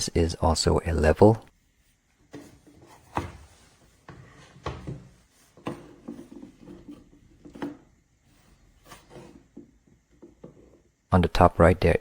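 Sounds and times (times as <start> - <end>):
soft rubbing: 1.5 - 9.9.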